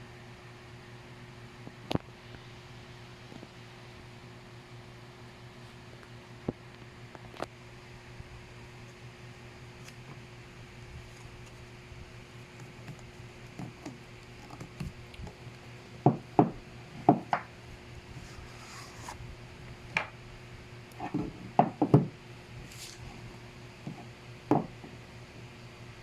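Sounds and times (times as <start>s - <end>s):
steady fan hum: 0.0s - 26.0s.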